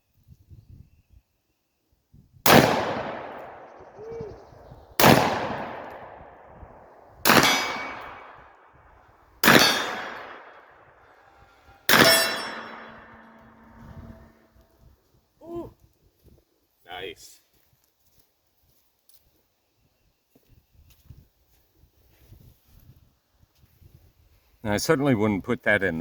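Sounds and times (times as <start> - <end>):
gunshots with echo: 2.5 - 4.2, 5.0 - 8.6, 9.4 - 10.8, 11.9 - 14.3
gun hammer cocking: 11.9 - 13.6.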